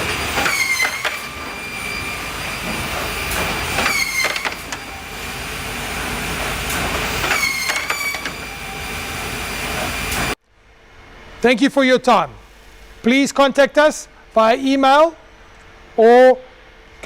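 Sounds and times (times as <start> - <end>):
machine clatter: 0.0 - 1.4, 2.6 - 5.0, 6.3 - 8.5
short machine whine: 0.0 - 10.4.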